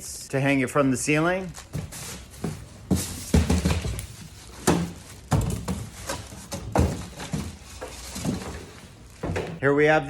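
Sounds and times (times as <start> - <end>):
packaging knocks and rustles: 1.6 - 9.6.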